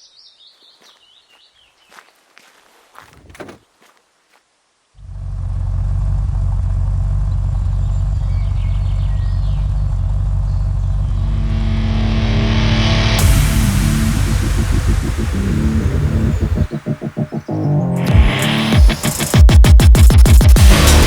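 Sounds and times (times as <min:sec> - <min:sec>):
utility vehicle engine running: 0:05.0 - 0:17.4
rush of noise: 0:10.8 - 0:21.0.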